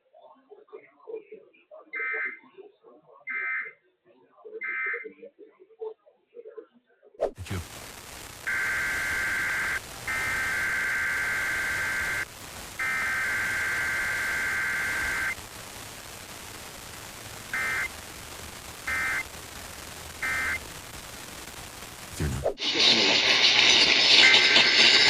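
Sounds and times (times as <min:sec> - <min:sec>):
radio static: 0:07.2 - 0:25.0
warbling digital data bursts: 0:07.5 - 0:25.0.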